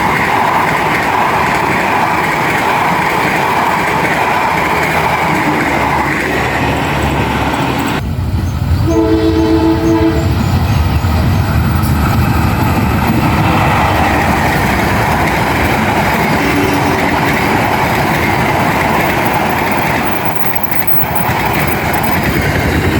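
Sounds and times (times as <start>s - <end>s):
train wheels rumbling on rails: 0.0s - 22.9s
train horn: 8.8s - 10.5s, 16.3s - 17.3s.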